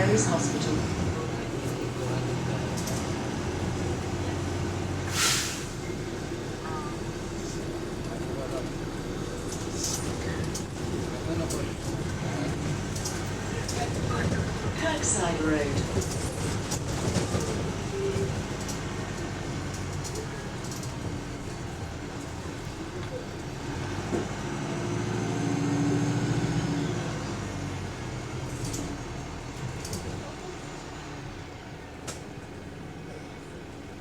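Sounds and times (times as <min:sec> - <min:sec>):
bus engine humming: 0:00.0 - 0:34.0
short clicks or hisses: 0:05.1 - 0:05.8.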